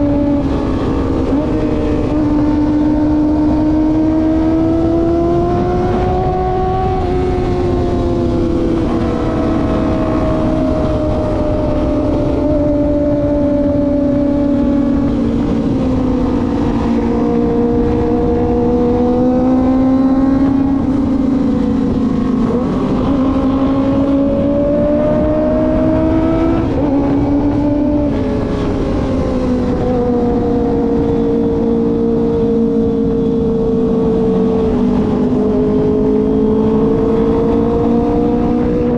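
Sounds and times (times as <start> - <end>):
high-revving motorcycle engine: 0.0 - 38.9.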